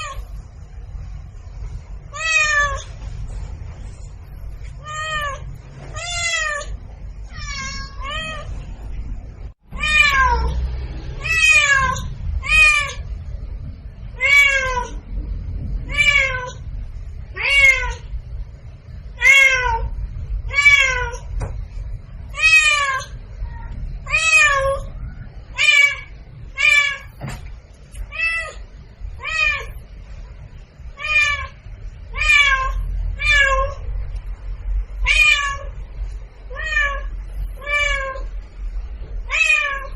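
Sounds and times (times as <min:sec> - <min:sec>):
low steady hum: 0:00.0 - 0:39.9
cat meowing: 0:02.1 - 0:03.0, 0:04.7 - 0:08.6, 0:09.7 - 0:10.6, 0:11.2 - 0:13.1, 0:14.2 - 0:15.0, 0:15.8 - 0:16.6, 0:17.3 - 0:18.1, 0:19.2 - 0:21.3, 0:22.3 - 0:27.2, 0:28.1 - 0:29.8, 0:31.0 - 0:33.8, 0:35.0 - 0:35.8, 0:36.5 - 0:38.3, 0:39.2 - 0:39.9.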